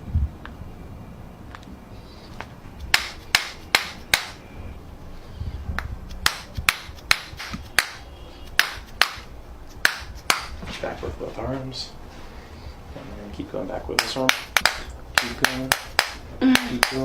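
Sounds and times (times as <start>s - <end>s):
sharp taps: 2.8s - 4.4s, 5.8s - 10.6s, 13.9s - 17.0s.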